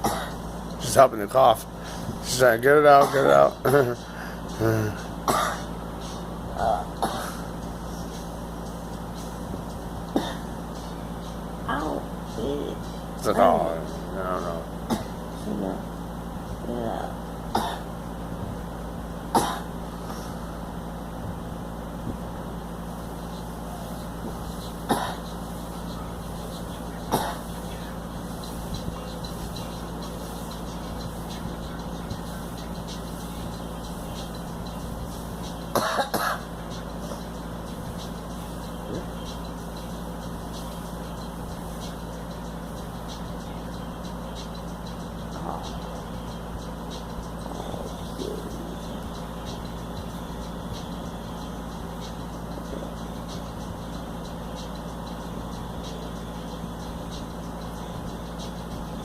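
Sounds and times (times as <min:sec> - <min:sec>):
girl coughing: 0:00.0 - 0:00.4, 0:03.0 - 0:04.0, 0:04.6 - 0:05.7, 0:06.6 - 0:07.5, 0:10.1 - 0:10.5, 0:14.9 - 0:15.2, 0:17.5 - 0:17.9, 0:19.3 - 0:19.7, 0:24.9 - 0:25.2, 0:27.1 - 0:27.5, 0:35.7 - 0:36.5
steady low hum: 0:00.0 - 0:59.0.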